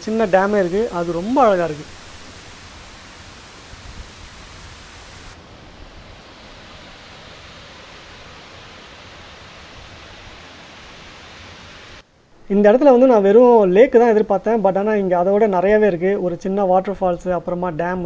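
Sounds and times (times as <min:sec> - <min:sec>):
wind rumbling on microphone: 0:00.0 - 0:12.9
high rushing hiss: 0:00.0 - 0:18.0.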